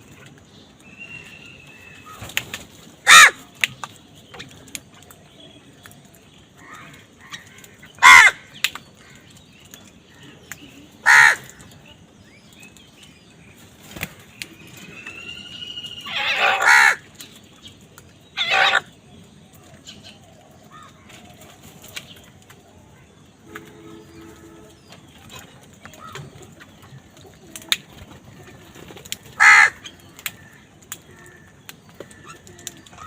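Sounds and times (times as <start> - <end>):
crow cawing: 3.0 - 3.4, 8.0 - 8.5, 11.0 - 11.5, 16.1 - 17.0, 29.4 - 29.8.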